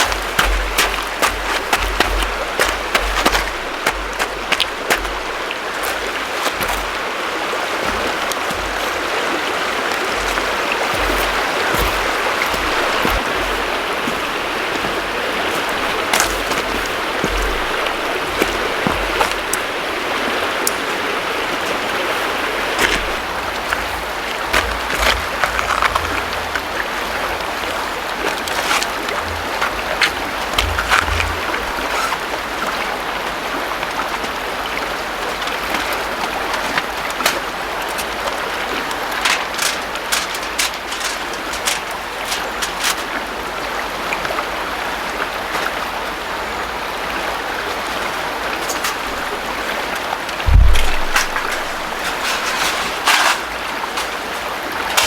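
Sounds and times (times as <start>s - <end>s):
low rumbling bumps: 0.0s - 20.3s, 22.7s - 27.5s, 29.0s - 32.4s, 50.4s - 54.1s
river water rushing over stones: 0.0s - 55.0s.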